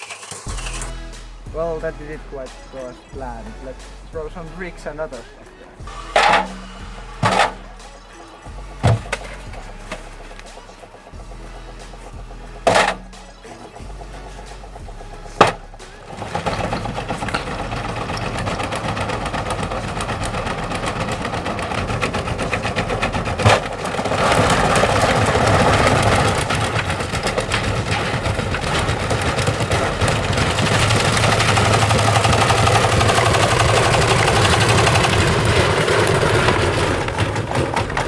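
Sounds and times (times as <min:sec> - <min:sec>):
hard objects clattering in drum: 0:00.0 - 0:00.9, 0:01.5 - 0:38.0
washing machine motor hum: 0:01.5 - 0:38.0.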